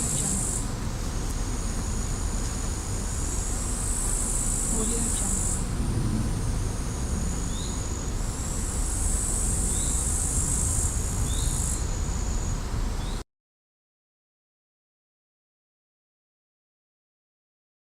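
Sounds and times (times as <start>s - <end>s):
insects and crickets droning: 0.0s - 13.2s
low wind rumble: 0.0s - 13.2s.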